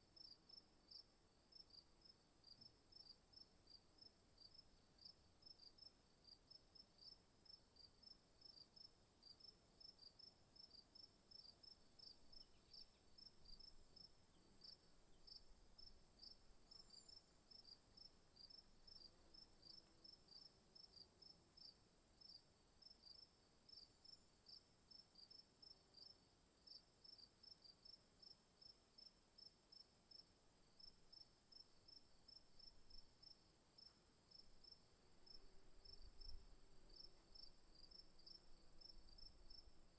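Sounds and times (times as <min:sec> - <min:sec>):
crickets chirping: 0:07.0 - 0:24.6, 0:29.7 - 0:39.9.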